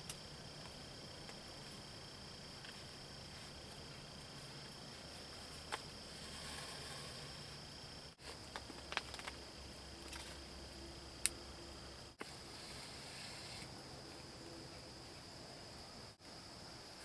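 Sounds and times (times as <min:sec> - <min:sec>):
high-pitched insect drone: 0:00.0 - 0:08.6.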